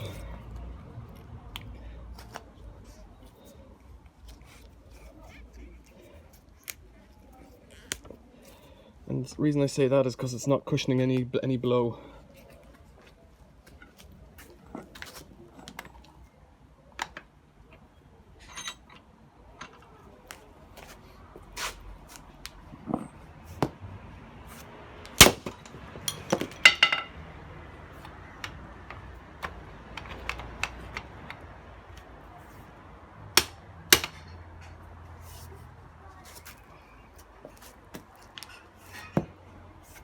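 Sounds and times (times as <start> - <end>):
sledgehammer striking metal lock: 25.2 - 27.1, 33.4 - 34.4.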